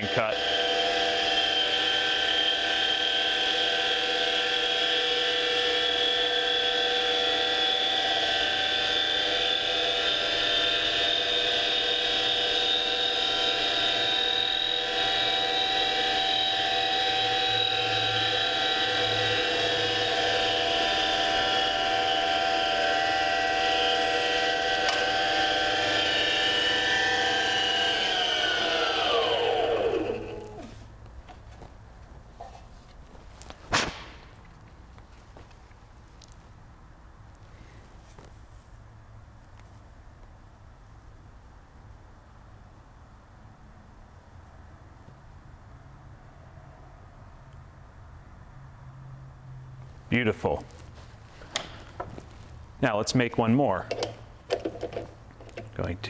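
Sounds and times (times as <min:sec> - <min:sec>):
lathe motor whining: 0:00.0 - 0:30.9, 0:50.4 - 0:56.0.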